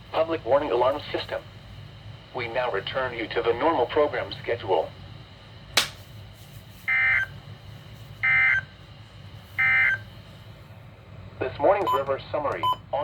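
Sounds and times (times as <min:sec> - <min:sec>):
sharp click: 0:05.8 - 0:06.0.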